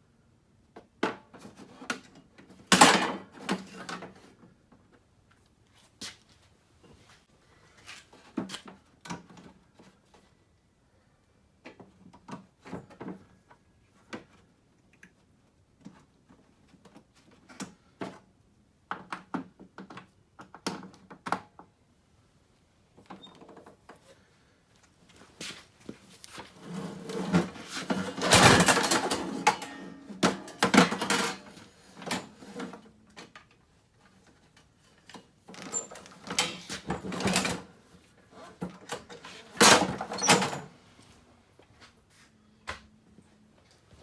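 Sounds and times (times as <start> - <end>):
tools knocking and scraping on engine: 26.5 - 32.4.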